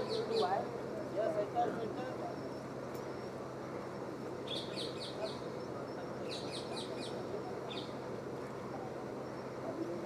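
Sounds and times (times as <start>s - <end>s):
murmur of people: 0.0s - 10.0s
small bird chirping: 4.4s - 5.4s.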